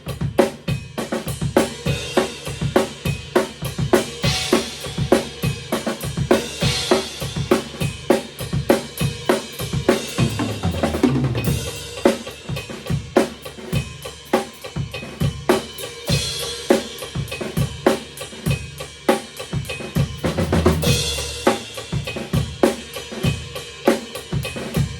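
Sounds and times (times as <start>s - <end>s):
rock drum kit playing: 0.0s - 24.9s
drum fill: 1.1s - 18.1s.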